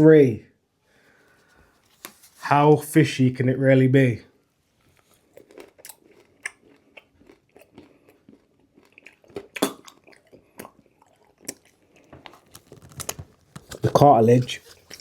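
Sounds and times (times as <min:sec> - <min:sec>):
wet chewing crunches: 0:04.9 - 0:15.0.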